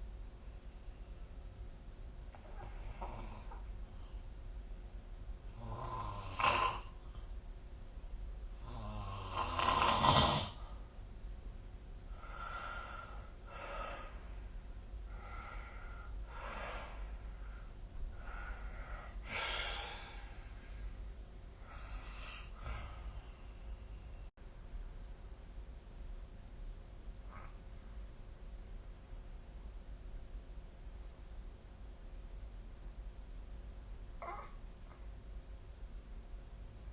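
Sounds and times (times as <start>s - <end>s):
person snoring: 5.6s - 7.0s, 8.6s - 10.6s.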